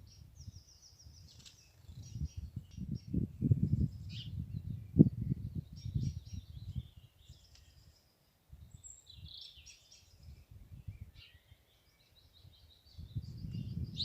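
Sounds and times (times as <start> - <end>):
wind buffeting microphone: 0.0 - 7.5, 10.1 - 11.2, 12.3 - 14.0
songbirds singing: 0.0 - 14.0.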